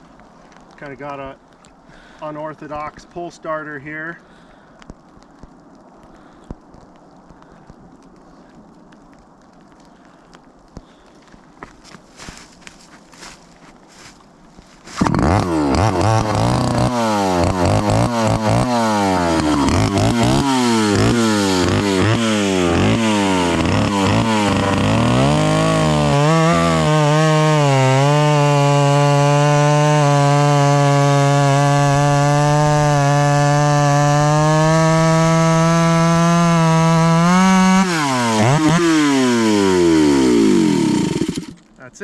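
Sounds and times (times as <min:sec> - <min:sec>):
chainsaw cutting through log: 0:14.8 - 0:41.7
chainsaw engine revving: 0:14.9 - 0:41.6.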